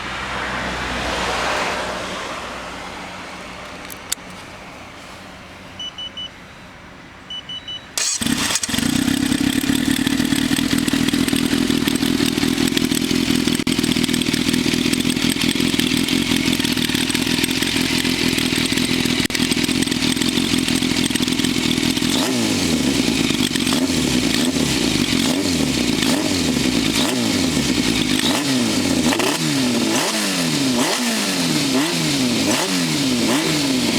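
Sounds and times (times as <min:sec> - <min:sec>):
motorcycle engine idling and revving: 0:00.0 - 0:04.2, 0:08.0 - 0:33.9
short electronic beeps: 0:05.8 - 0:06.7, 0:07.3 - 0:08.2.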